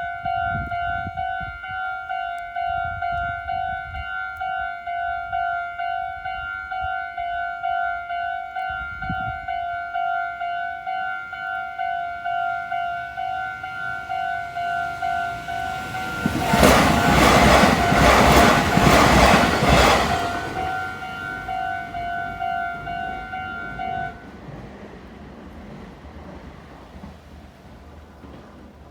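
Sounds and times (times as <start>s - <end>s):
level crossing warning bell: 0.0s - 24.3s
train wheels clacking over rail joints: 14.4s - 22.4s.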